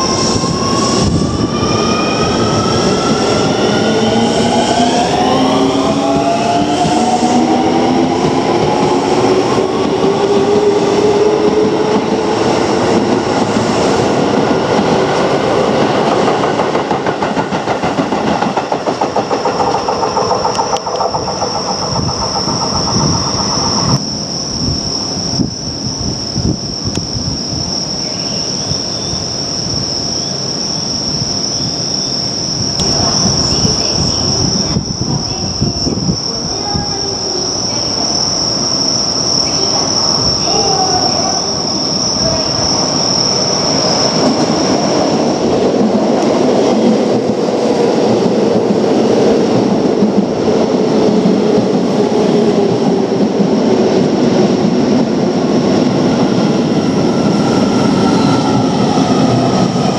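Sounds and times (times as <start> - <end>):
high-pitched squeal: 0.0 - 14.2, 19.0 - 24.6
electric train running on track: 0.0 - 59.9.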